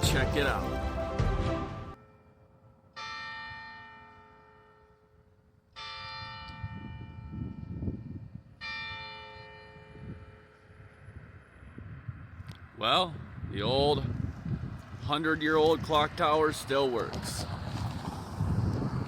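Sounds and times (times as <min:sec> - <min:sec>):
church tower bell ringing: 0:02.0 - 0:10.9.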